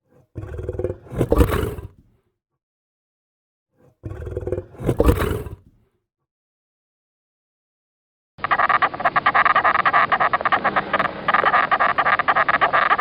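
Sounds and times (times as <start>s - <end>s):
lion roaring: 0.2s - 2.1s, 4.0s - 5.8s.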